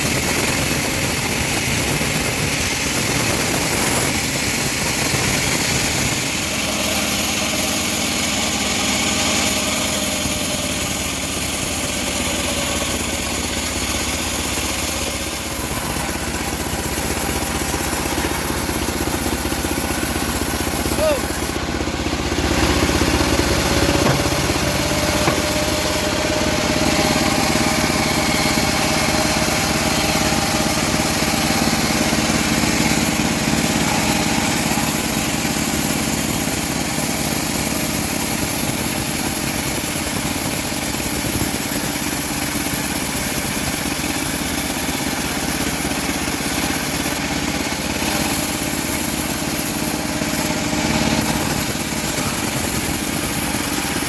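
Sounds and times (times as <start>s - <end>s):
bandsaw mill sawing wood: 0.0s - 54.0s.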